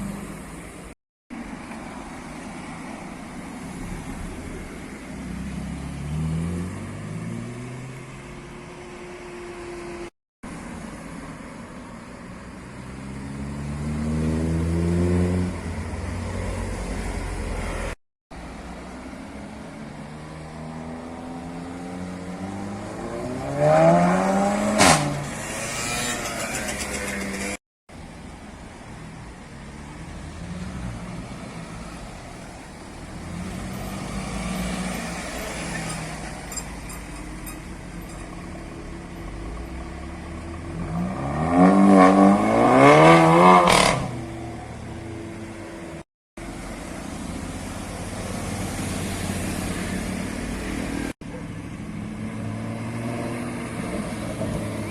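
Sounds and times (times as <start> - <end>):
car engines revving hard: 12.7 - 17.9, 18.9 - 27.6, 29.6 - 36.6, 39.0 - 51.2, 51.8 - 54.9.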